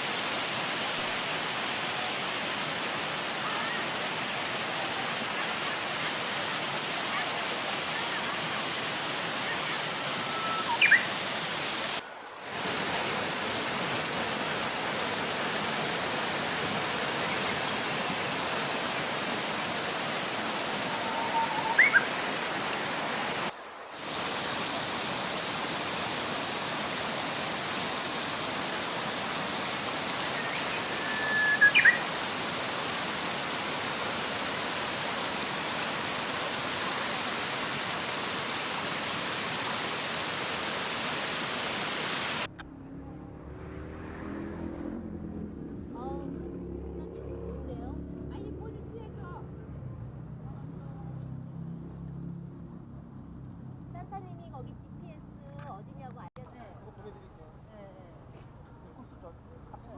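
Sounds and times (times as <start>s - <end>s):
stream water rushing: 0.0s - 42.6s
bird chirping: 10.3s - 11.1s, 21.0s - 22.1s, 30.4s - 32.0s.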